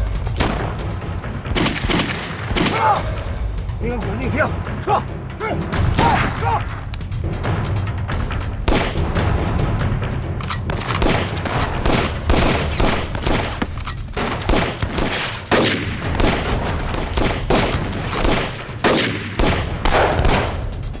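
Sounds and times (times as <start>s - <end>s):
heavy gunfire: 0.4s - 3.2s, 8.7s - 9.6s, 10.6s - 21.0s.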